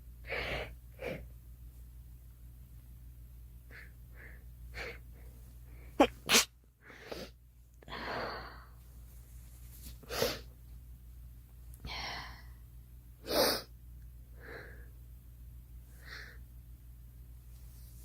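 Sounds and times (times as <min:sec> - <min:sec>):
breathing: 0:03.7 - 0:06.0, 0:07.9 - 0:08.8, 0:14.4 - 0:15.0, 0:15.9 - 0:16.4
girl sneezing: 0:06.0 - 0:06.5.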